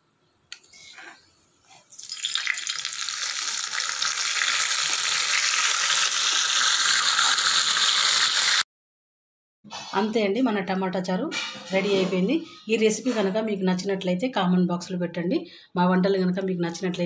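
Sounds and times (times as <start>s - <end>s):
spices sizzling in hot oil: 1.7s - 8.6s.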